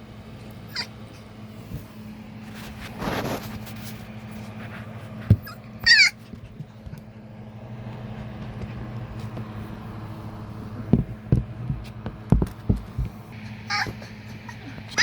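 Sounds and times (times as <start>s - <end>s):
steady low hum: 0.0s - 15.0s
puppy squealing: 0.7s - 1.3s, 5.4s - 6.6s, 13.4s - 15.0s.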